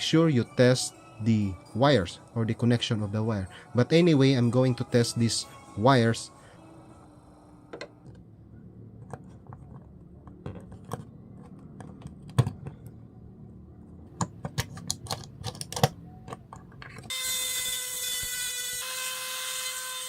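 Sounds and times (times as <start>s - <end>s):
small parts clicking and tapping: 14.1s - 17.2s.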